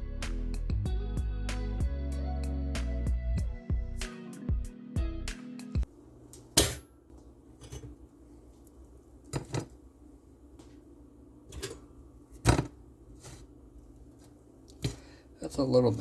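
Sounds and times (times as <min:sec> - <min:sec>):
toaster clicks and knocks: 0:06.6 - 0:06.8, 0:11.5 - 0:12.8.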